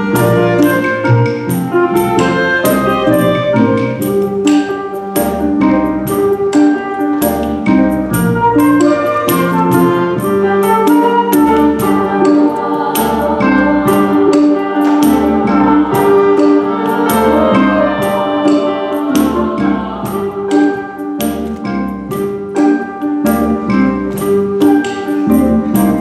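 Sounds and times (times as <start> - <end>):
sharp percussion strikes: 0.0 - 26.0
symphony orchestra playing: 0.0 - 26.0.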